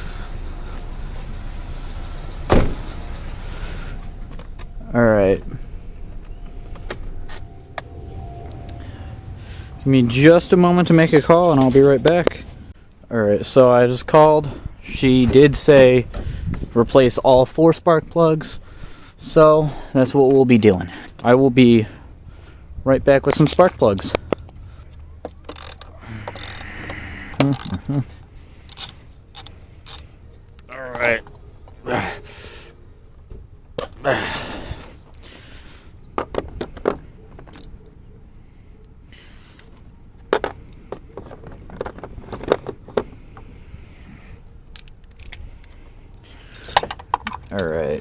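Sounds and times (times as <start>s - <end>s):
steady low rumble: 0.0s - 17.4s.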